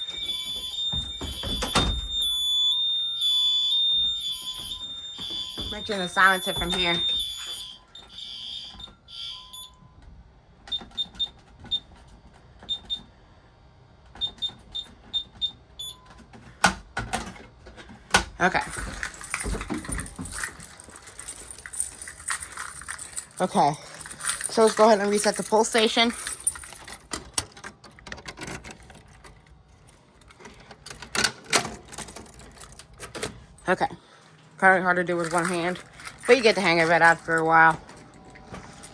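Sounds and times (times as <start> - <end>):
key clicking and rattling in lock: 0.0 - 8.4, 18.6 - 33.6, 35.1 - 38.9
fire alarm tone: 0.0 - 10.0, 14.2 - 16.1.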